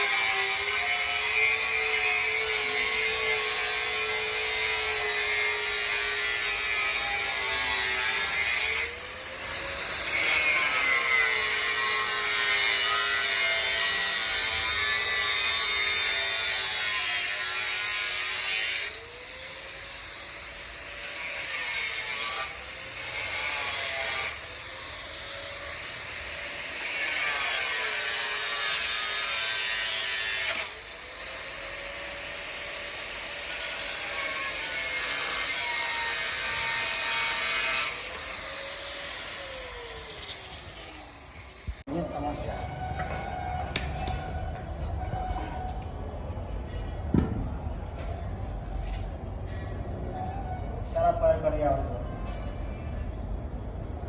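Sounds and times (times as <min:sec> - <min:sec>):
power tool grinding metal: 0:00.0 - 0:42.4.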